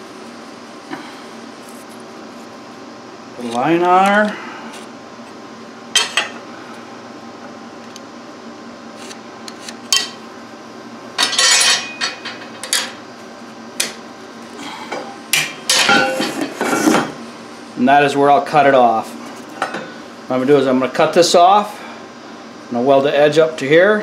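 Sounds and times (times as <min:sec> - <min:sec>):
steady hum: 0:00.0 - 0:24.0
metal tools clinking on steel: 0:11.2 - 0:12.9.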